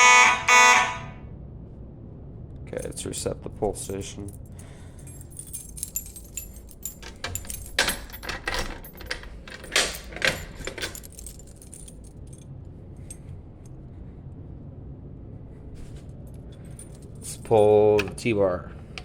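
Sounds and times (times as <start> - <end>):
low steady hum: 0.0 - 19.0
keys and metal parts clicking: 3.9 - 12.4, 16.1 - 18.4.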